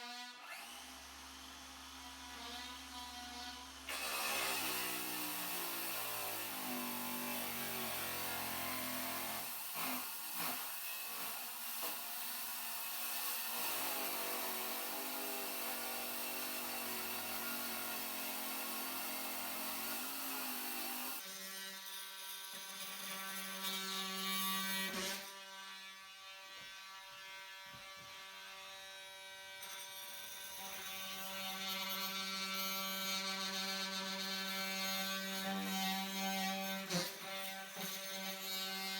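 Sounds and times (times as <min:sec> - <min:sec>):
electric power tool running: 0:00.4 - 0:12.0.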